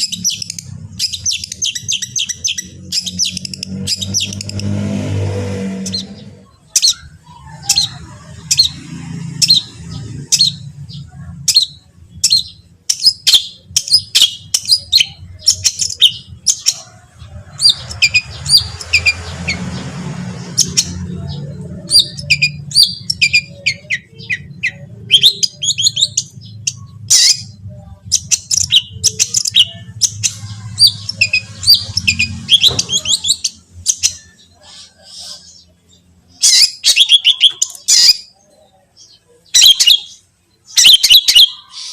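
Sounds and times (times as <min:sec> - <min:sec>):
bird singing high chattering notes: 0:00.0 - 0:41.9.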